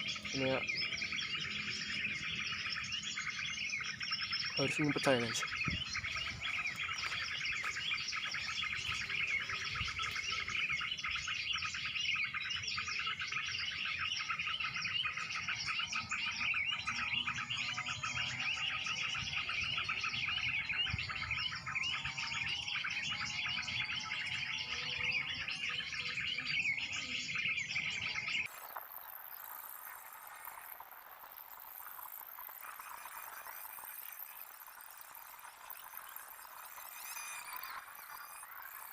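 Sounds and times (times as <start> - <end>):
small birds chirping and twittering: 0.0 - 38.9.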